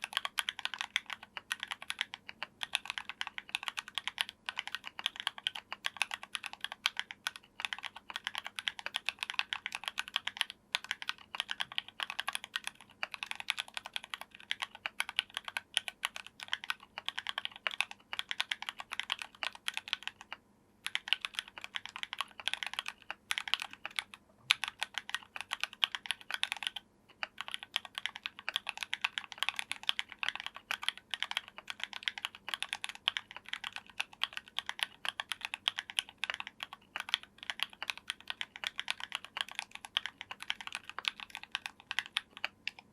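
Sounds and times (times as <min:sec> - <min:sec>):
mechanical keyboard typing: 0:00.0 - 0:42.9.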